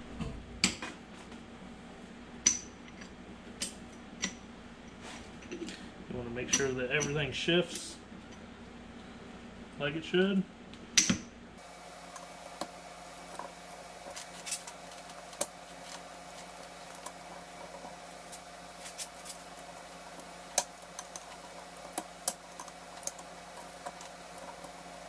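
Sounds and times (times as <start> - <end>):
steady hum: 11.4 - 25.0.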